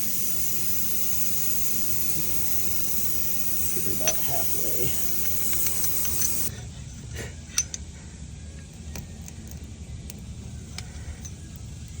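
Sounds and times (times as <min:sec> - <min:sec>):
air hissing from tire: 0:00.0 - 0:06.5.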